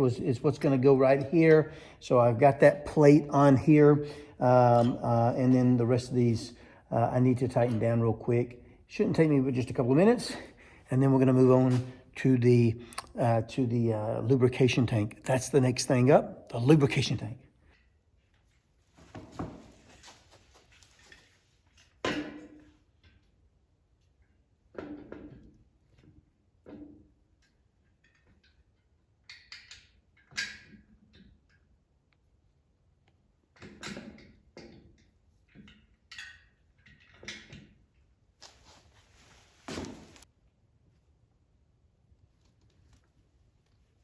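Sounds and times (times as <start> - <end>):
scraping rustle: 38.4 - 40.3.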